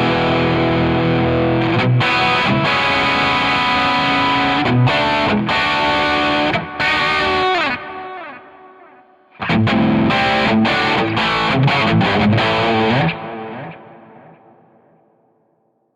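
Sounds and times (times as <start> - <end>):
distorted electric guitar: 0.0 - 15.0.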